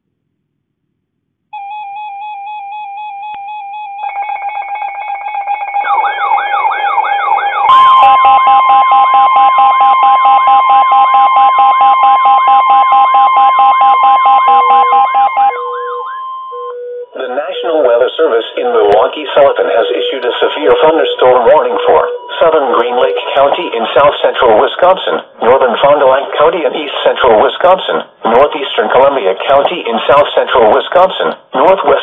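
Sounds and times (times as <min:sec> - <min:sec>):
sweeping siren-like tones: 0:01.6 - 0:18.0, 0:18.8 - 0:24.1
warbling electronic tones: 0:01.6 - 0:18.0, 0:18.8 - 0:25.2
low beeps: 0:01.6 - 0:18.2, 0:19.3 - 0:24.1
steady high alarm tone: 0:01.6 - 0:26.5
fast pulsing beeps: 0:12.0 - 0:16.8.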